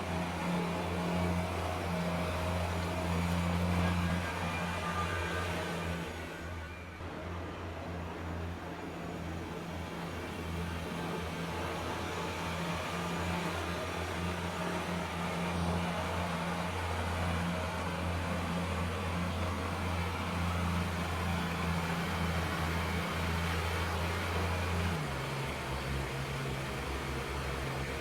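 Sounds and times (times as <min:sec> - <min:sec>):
diesel tractor engine running: 0:08.2 - 0:28.0
snow blower rushing: 0:10.3 - 0:28.0.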